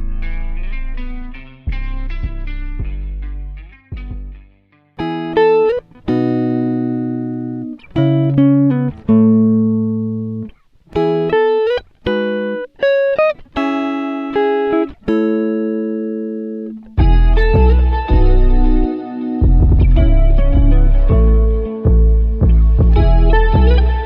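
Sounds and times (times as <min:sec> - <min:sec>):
guitar plucked notes and chords: 0:00.0 - 0:24.0.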